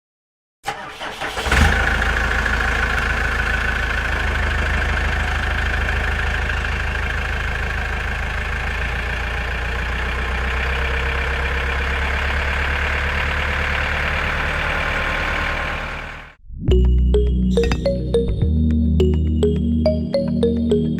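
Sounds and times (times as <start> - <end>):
engine starting and running: 0.6 - 18.3.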